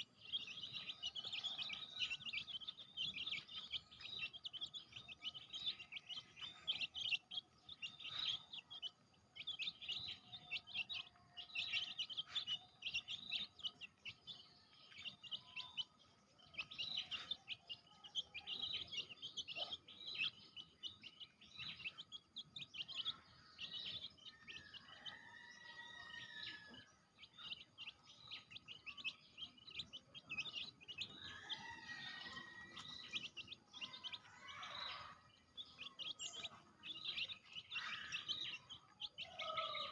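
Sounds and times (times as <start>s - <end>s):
baby chicks peeping: 0.0s - 39.9s
chick arching calls: 31.0s - 39.9s.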